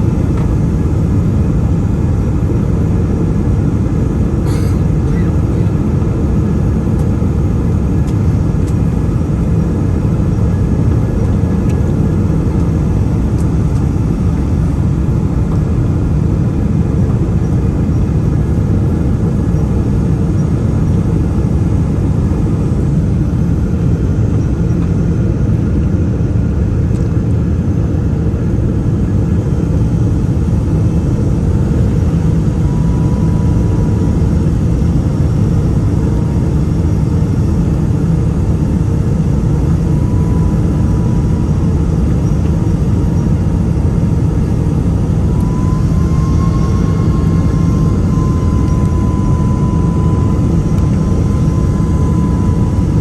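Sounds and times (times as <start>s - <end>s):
jet engines rumbling: 0.0s - 53.0s.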